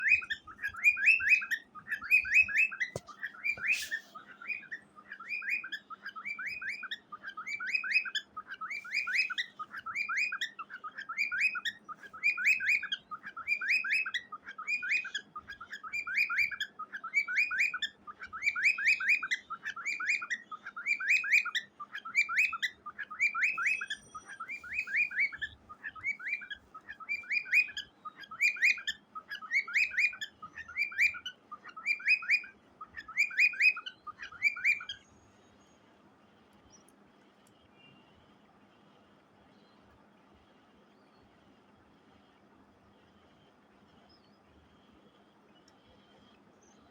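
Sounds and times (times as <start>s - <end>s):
cockatiel chirping: 0.0s - 35.0s.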